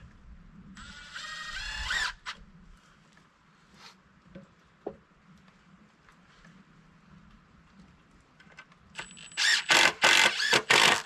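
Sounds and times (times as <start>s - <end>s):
cordless drill driving screw: 0.8s - 2.4s, 9.4s - 11.0s.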